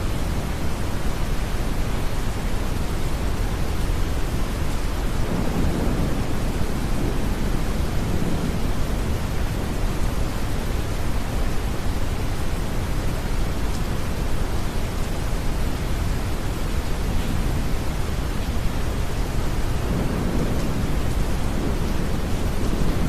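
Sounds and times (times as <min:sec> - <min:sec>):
rain hiss: 0:00.0 - 0:23.0
distant thunder rumble: 0:04.9 - 0:11.0, 0:19.3 - 0:23.0.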